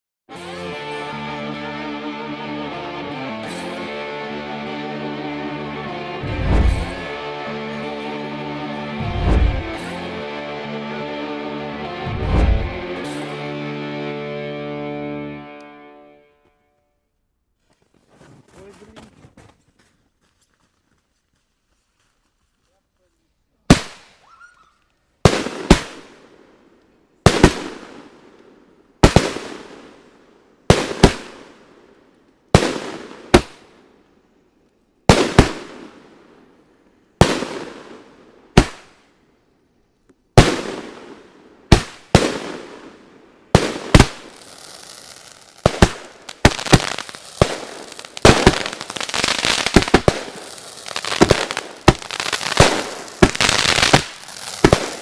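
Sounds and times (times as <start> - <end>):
fireworks bangs with echo: 3.4 - 5.6, 6.2 - 11.1, 23.7 - 24.1, 25.3 - 26.6, 27.3 - 31.9, 32.6 - 33.9, 35.1 - 36.5, 37.2 - 39.0, 40.4 - 55.0
fireworks crackling and popping: 3.4 - 13.6, 23.7 - 34.1, 35.0 - 39.2, 40.0 - 55.0.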